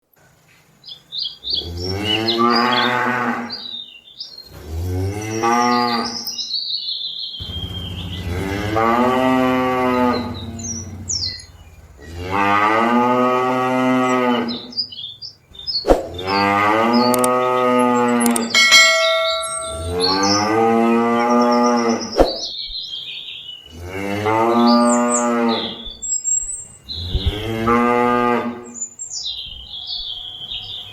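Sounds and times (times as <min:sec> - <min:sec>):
cattle mooing: 0:07.5 - 0:14.6.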